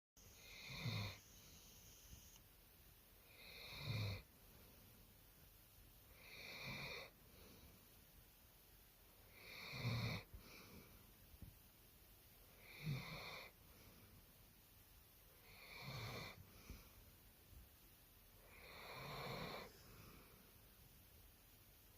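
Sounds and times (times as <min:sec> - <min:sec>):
dog snoring: 0:00.3 - 0:02.2, 0:03.3 - 0:04.3, 0:06.1 - 0:07.2, 0:09.3 - 0:10.3, 0:12.5 - 0:13.6, 0:15.4 - 0:16.8, 0:18.4 - 0:19.8.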